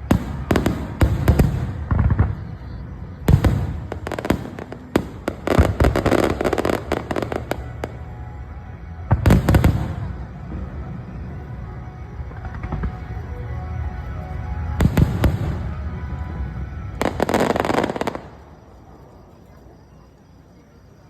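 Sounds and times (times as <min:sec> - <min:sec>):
fireworks cracking and booming: 0:00.0 - 0:08.2, 0:09.0 - 0:11.0, 0:12.2 - 0:13.9, 0:14.5 - 0:18.8.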